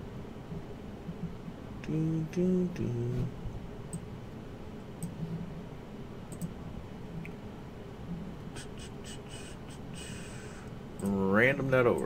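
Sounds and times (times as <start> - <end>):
computer mouse clicks: 6.3 - 6.6.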